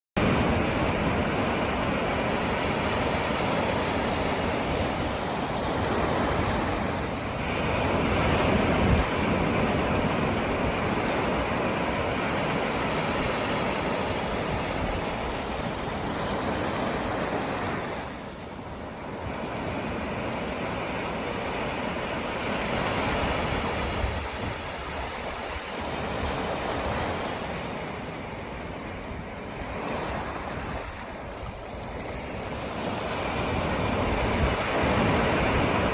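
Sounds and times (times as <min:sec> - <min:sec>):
ocean waves breaking: 0:00.2 - 0:35.9.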